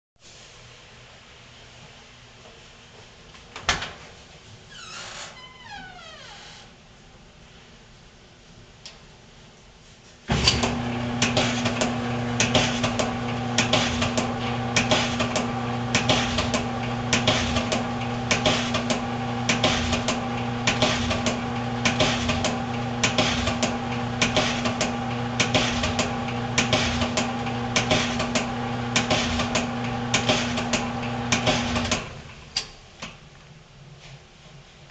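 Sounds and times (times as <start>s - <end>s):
dryer motor humming: 10.3s - 32.5s
irregular clicking in dryer: 10.3s - 33.5s.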